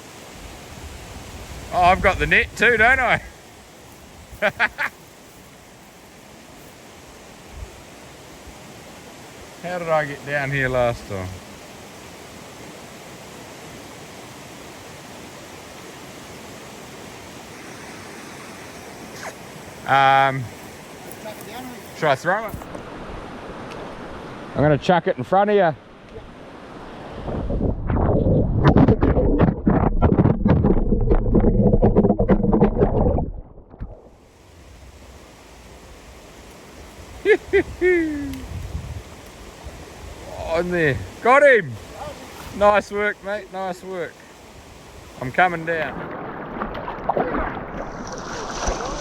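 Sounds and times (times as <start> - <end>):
river flowing over stones: 0.0 - 24.6, 33.9 - 49.0
wind buffeting microphone: 0.4 - 3.4, 26.9 - 36.2, 36.8 - 43.0.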